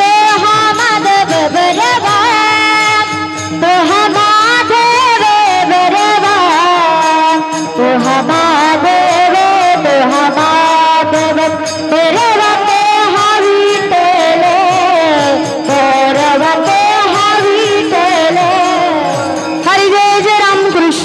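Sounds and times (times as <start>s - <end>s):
devotional melody with sliding pitch: 0.0s - 21.0s
percussion strokes: 0.0s - 21.0s.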